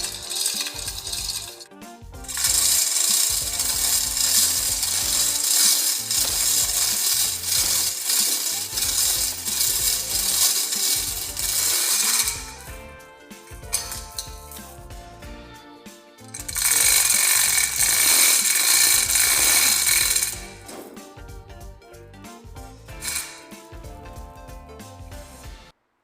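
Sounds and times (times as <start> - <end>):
harsh steady hiss: 0.0 - 15.2, 16.2 - 21.0.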